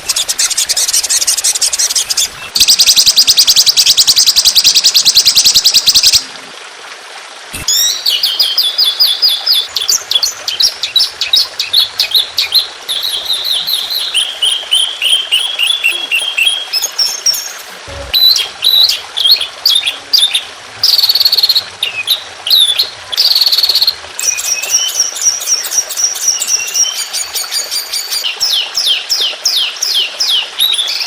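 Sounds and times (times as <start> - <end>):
songbird high chirps: 7.7 - 31.0.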